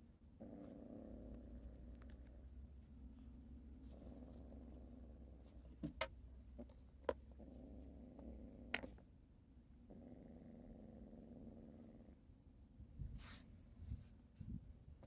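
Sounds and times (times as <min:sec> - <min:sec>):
cat growling low: 0:00.4 - 0:02.5, 0:03.4 - 0:05.7, 0:07.3 - 0:09.0, 0:09.8 - 0:12.2.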